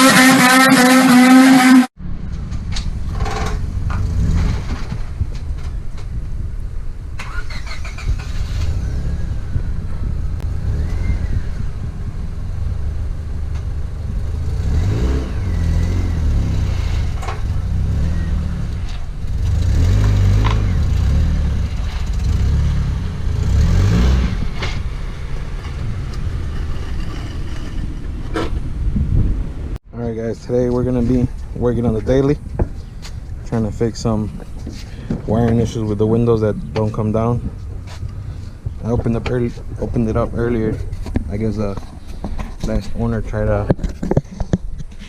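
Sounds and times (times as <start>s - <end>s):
car engine revving: 0.0s - 5.1s, 7.2s - 28.8s.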